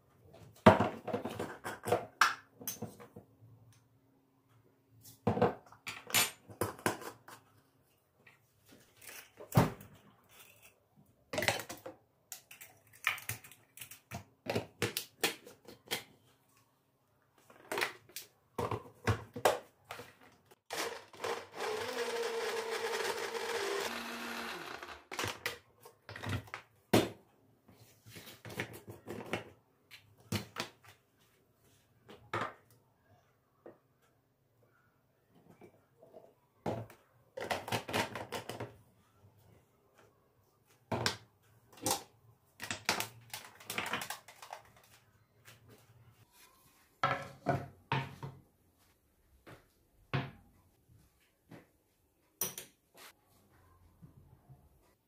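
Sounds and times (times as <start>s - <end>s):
small appliance whirring: 20.7s - 25.4s
objects clicking and knocking: 40.9s - 45.0s.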